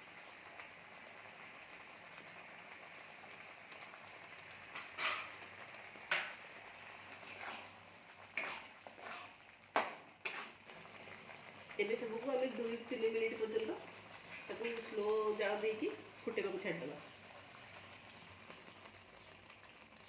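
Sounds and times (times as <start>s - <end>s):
chicken sizzling in a pan: 0.0s - 20.0s
spatula scraping a pan: 4.7s - 5.5s, 7.1s - 11.1s, 14.2s - 14.9s.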